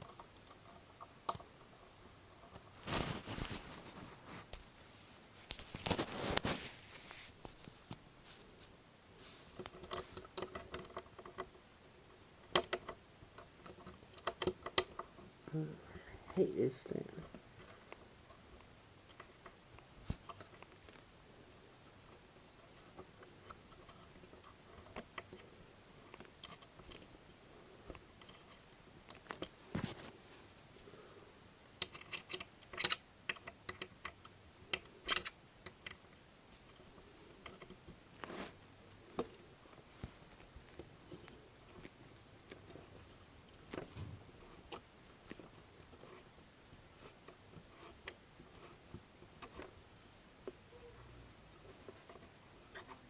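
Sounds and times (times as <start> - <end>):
parts clicking and tapping: 12.4 - 15.2, 31.8 - 36.2.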